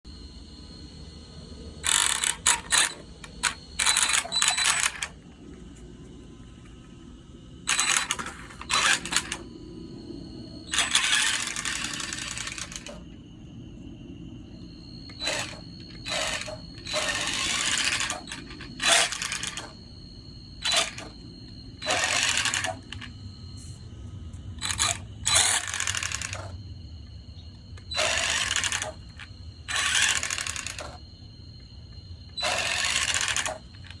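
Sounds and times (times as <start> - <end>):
faint high whine: 0.1 - 34.0
rc truck motor grinding: 1.8 - 5.2, 7.6 - 9.5, 10.6 - 13.1, 15.0 - 19.8, 20.6 - 23.1, 24.6 - 26.6, 27.8 - 31.0, 32.3 - 34.0.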